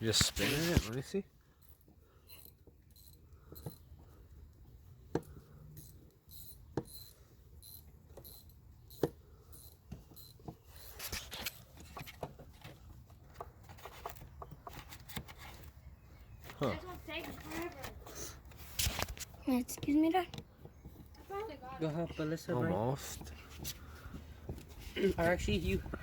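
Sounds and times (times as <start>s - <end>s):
screwdriver clicks and scrapes: 5.2s - 12.3s.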